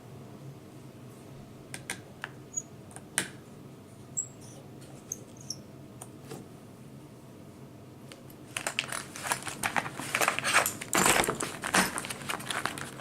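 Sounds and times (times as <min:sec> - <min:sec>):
faint high squeaks: 0:04.2 - 0:05.6.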